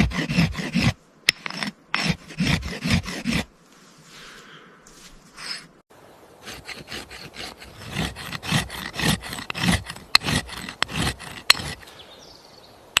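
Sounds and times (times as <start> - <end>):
sharpening stone scraping axe blade: 0.0 - 3.5, 6.7 - 11.9.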